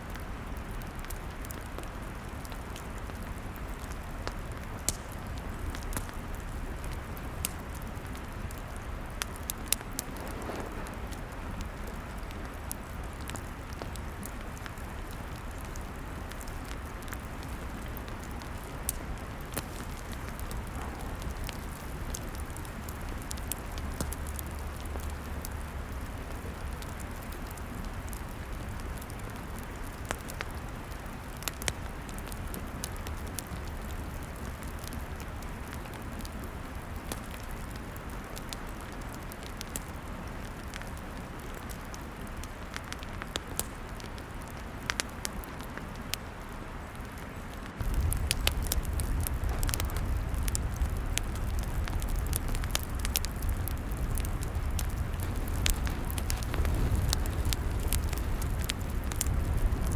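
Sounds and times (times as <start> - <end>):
fire popping and snapping: 0.0 - 59.9
log fire crackling: 0.0 - 59.9
low rumble: 19.0 - 24.6.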